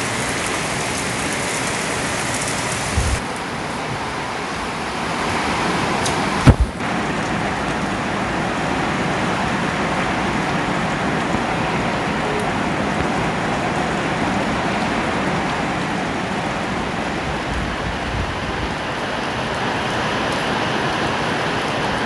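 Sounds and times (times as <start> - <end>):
steady rain falling: 0.0 - 22.0.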